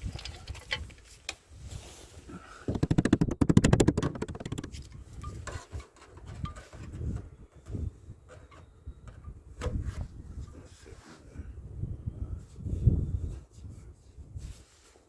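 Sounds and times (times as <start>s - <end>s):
knocks from handling tools: 2.7s - 4.8s.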